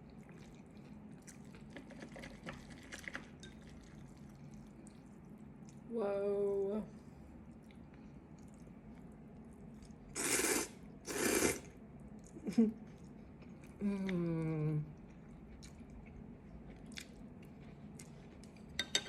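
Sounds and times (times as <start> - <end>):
slurping noodles: 10.1 - 11.7.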